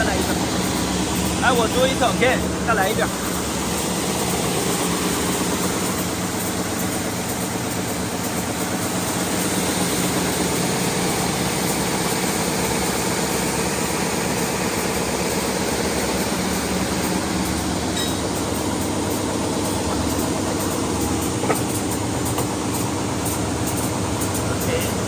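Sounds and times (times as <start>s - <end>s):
sanding machine droning: 0.0s - 25.0s.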